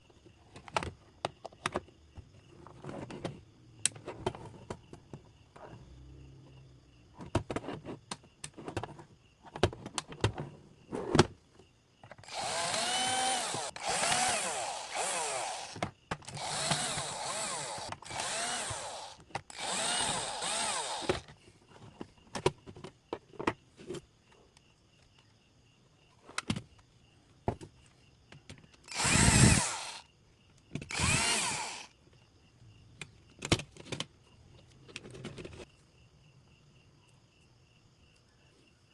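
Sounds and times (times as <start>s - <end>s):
power drill running: 12.2s - 21.2s, 28.9s - 30.1s, 30.9s - 31.9s.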